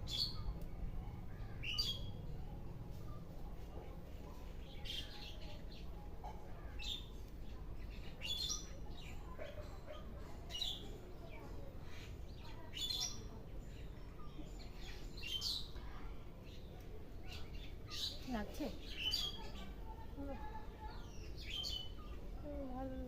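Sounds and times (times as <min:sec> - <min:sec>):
bird chirping: 0:00.0 - 0:00.6, 0:01.3 - 0:03.2.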